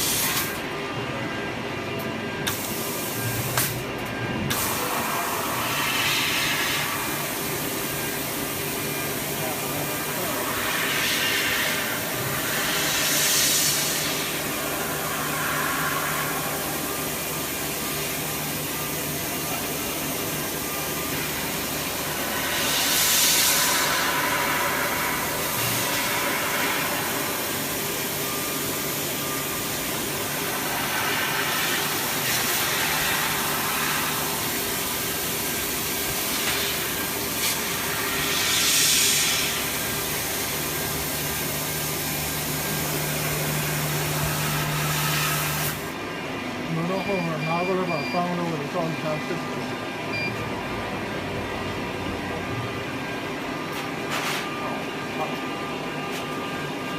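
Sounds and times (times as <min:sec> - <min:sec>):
laser cutting machine hum: 0:00.0 - 0:56.9
loud hissing surges: 0:21.8 - 0:28.1, 0:35.6 - 0:45.8.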